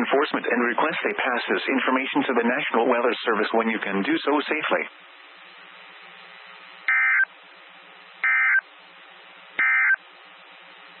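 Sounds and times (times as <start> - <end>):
faint radio static: 0.0 - 11.0
digital data tone bursts: 6.9 - 7.3, 8.2 - 8.6, 9.6 - 10.0.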